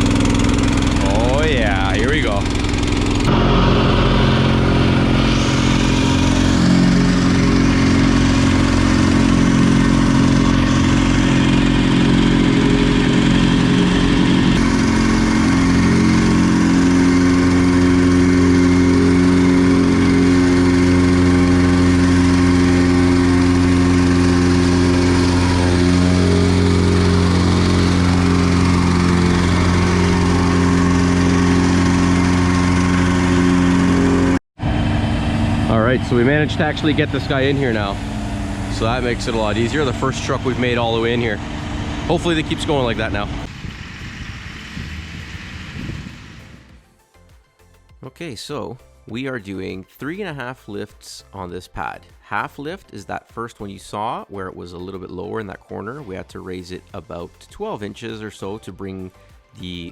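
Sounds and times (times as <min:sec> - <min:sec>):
diesel engine running: 0:00.0 - 0:47.0.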